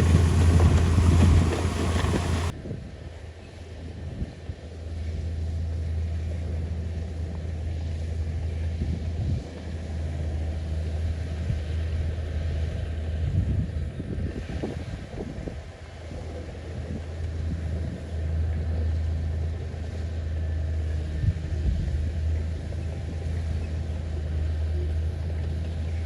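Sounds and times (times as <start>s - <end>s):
bulldozer diesel engine drone: 0.0s - 2.5s.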